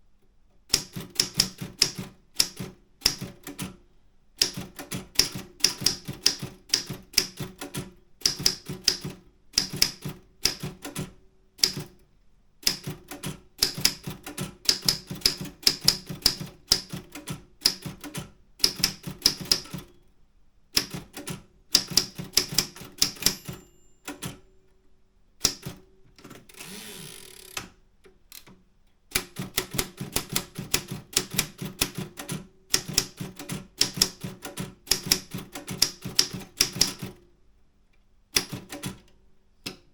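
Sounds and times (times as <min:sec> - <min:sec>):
typewriter key strikes: 0:00.7 - 0:03.7, 0:04.4 - 0:11.9, 0:12.6 - 0:19.9, 0:20.8 - 0:24.4, 0:29.2 - 0:37.2, 0:38.4 - 0:39.1
typewriter carriage return: 0:04.4 - 0:11.9, 0:12.7 - 0:20.0, 0:20.8 - 0:24.4, 0:29.2 - 0:37.2.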